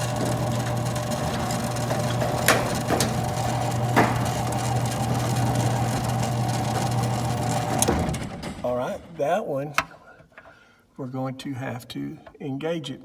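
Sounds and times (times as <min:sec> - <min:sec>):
door motor humming and whining: 0:00.0 - 0:08.6
sharp clicks or knocks: 0:00.1 - 0:04.6.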